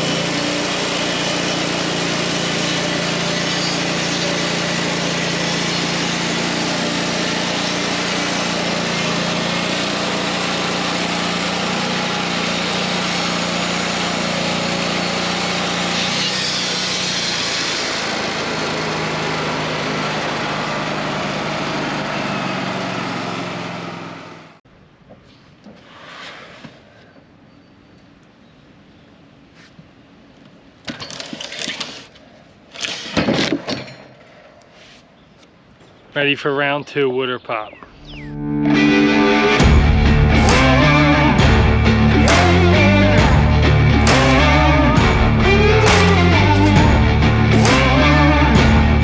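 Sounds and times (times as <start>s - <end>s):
band sawmill running: 0.0s - 24.6s, 38.1s - 49.0s.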